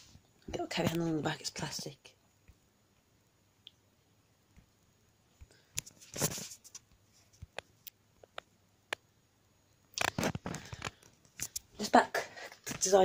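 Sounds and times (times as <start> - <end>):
brief rustle: 5.8 - 7.6.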